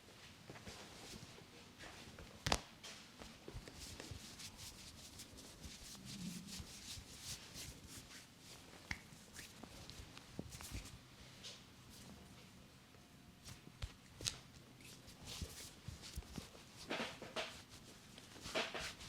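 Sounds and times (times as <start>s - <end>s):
hands rubbing hair and scalp: 3.5s - 11.0s, 13.4s - 19.0s.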